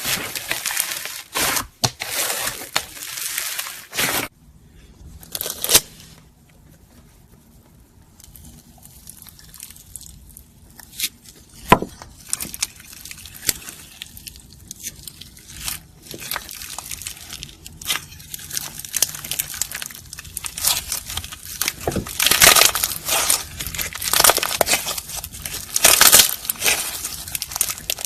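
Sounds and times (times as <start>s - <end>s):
crunchy slime crackling: 0.0s - 4.3s, 8.2s - 28.0s.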